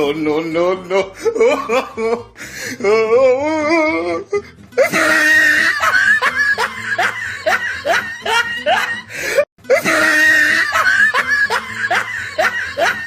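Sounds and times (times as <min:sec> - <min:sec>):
loud laughter: 0:04.8 - 0:13.0.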